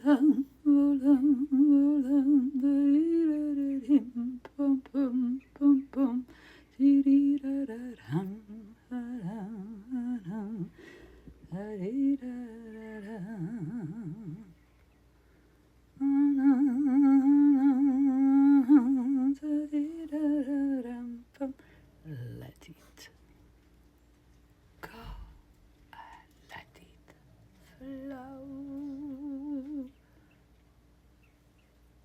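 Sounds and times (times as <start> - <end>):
woman humming: 0.0 - 6.2, 6.8 - 10.7, 11.4 - 14.6, 16.0 - 22.6, 24.8 - 26.9, 27.6 - 30.0.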